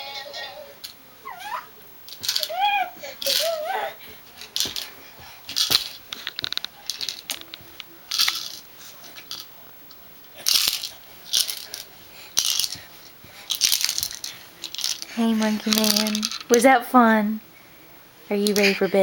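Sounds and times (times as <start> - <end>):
small hard objects clattering: 2.1 - 2.5, 4.4 - 4.9, 5.5 - 8.6, 12.4 - 12.8, 13.5 - 16.6.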